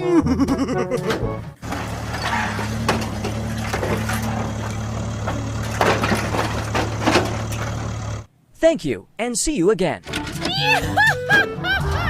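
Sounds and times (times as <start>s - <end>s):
knocks and clatter: 1.0s - 8.3s
truck engine idling: 1.6s - 8.3s.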